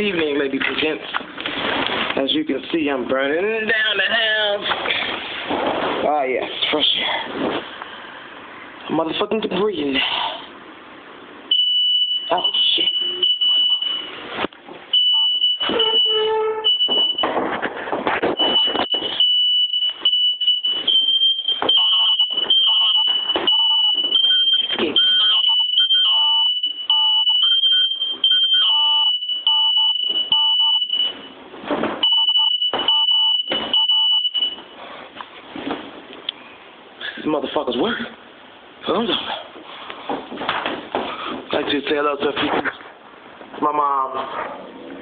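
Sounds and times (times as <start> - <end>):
smoke alarm shrieking: 11.5 - 14.2, 14.9 - 17.3, 18.4 - 31.4, 32.0 - 34.7
knocks and clatter: 16.8 - 19.2, 40.0 - 41.6.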